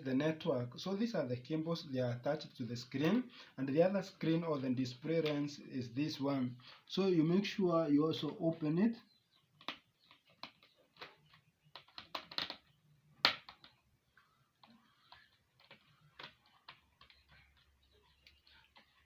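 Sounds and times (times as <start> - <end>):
plastic clicks of laptop handled: 9.5 - 13.8, 14.6 - 19.0.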